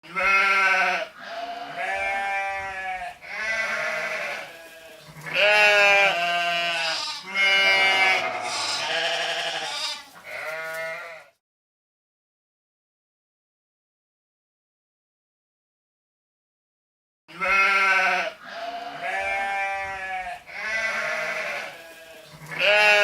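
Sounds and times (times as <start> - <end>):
sheep bleating: 0.0 - 11.4, 17.3 - 23.0.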